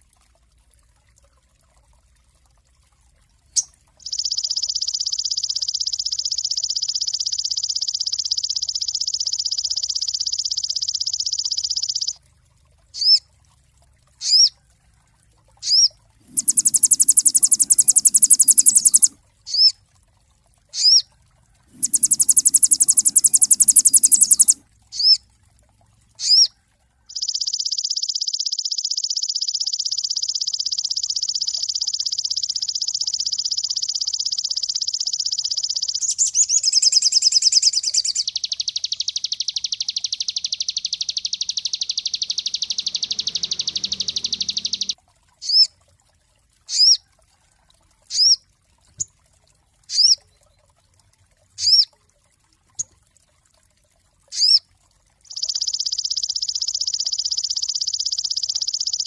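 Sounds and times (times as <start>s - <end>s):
bird buzzing trill: 16.3s - 19.1s, 21.8s - 24.6s
bird sharp chips: 21.8s - 24.6s.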